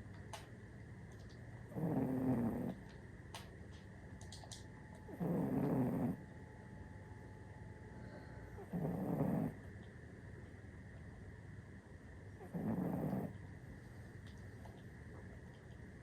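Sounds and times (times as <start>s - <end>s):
cat snoring: 1.7s - 2.8s, 5.1s - 6.2s, 8.5s - 9.6s, 12.4s - 13.4s.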